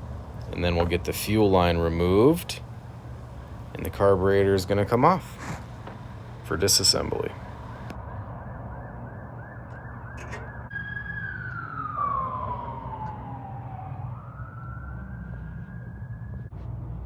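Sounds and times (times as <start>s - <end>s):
steady low hum: 0.0s - 8.0s
emergency siren yelp and wail: 8.3s - 16.5s.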